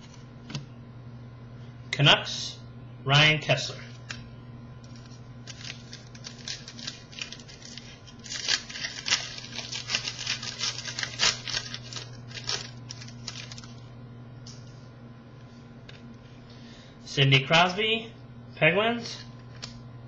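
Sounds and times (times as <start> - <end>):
paper and foil crinkling: 4.8 - 13.9.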